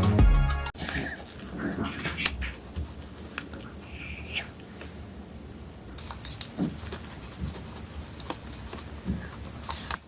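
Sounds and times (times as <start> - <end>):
paper rustling: 6.0 - 10.0.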